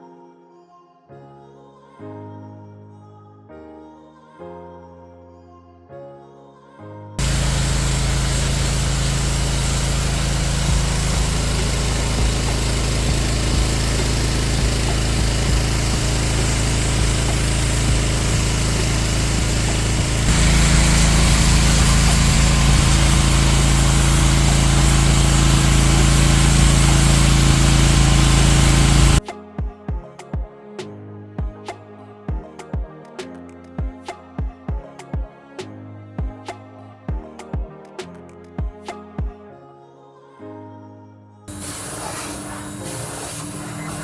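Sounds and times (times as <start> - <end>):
cleaning machine motor running: 7.2 - 29.2, 41.5 - 44.0.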